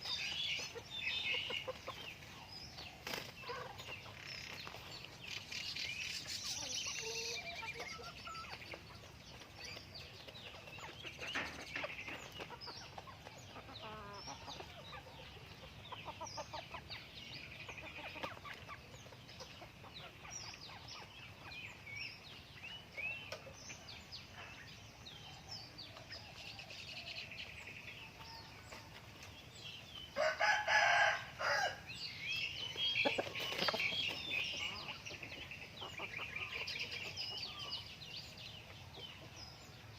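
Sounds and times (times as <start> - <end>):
chickens clucking: 0.0 - 39.9
rooster crowing: 30.2 - 31.9.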